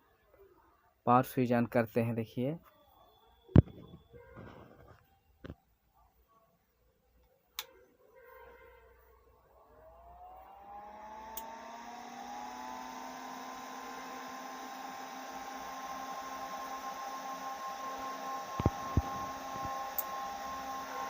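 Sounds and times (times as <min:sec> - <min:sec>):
cooling fan whirring: 0:09.8 - 0:21.0.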